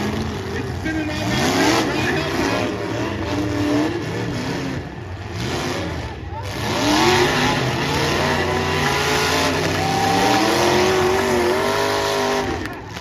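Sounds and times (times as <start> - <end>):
car engines revving hard: 0.0 - 13.0.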